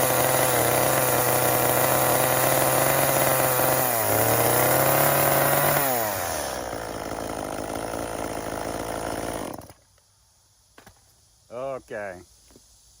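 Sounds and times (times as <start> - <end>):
chainsaw running and idling: 0.0 - 9.9.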